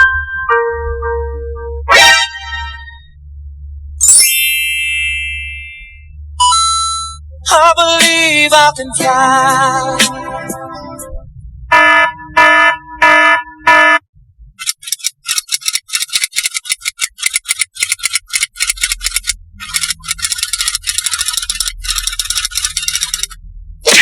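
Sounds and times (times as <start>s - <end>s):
low hum: 0.0s - 14.6s
fast rattling clicks: 14.6s - 23.4s.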